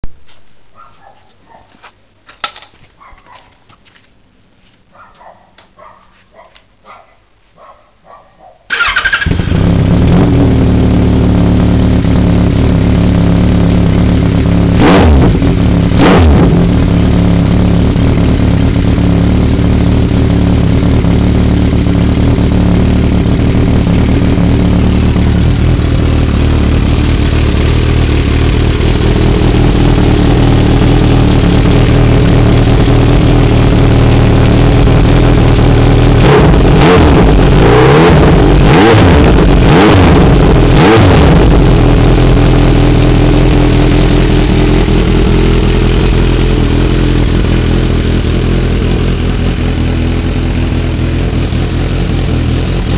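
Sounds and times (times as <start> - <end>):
motorcycle engine idling and revving: 8.7 - 52.9.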